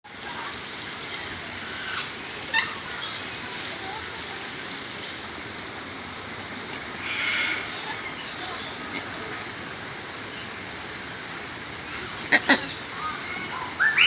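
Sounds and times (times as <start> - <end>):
steady hiss: 0.1 - 14.0.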